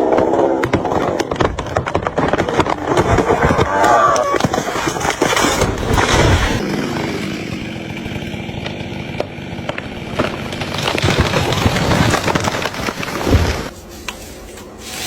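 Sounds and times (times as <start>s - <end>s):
chainsaw engine running: 6.0s - 12.8s.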